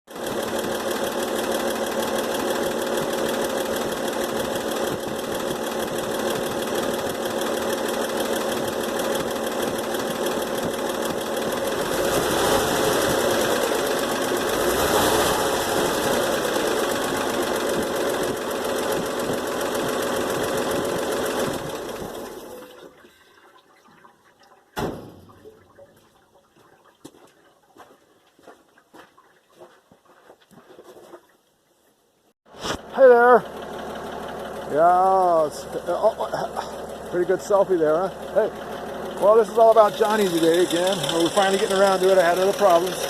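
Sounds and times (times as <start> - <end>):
pickup truck engine running: 0.1 - 22.5, 32.8 - 43.0.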